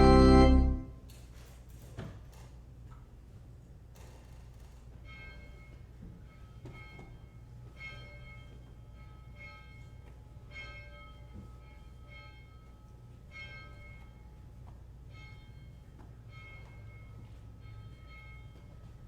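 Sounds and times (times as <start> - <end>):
church bells ringing: 0.0 - 0.9, 7.8 - 14.4
faint low hum: 0.0 - 1.0.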